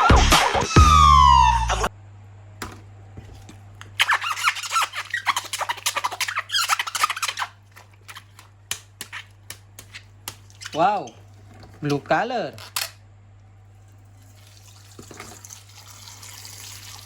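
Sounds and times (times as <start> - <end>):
plastic squeaks and clicks: 3.8 - 10.9, 11.9 - 13.0.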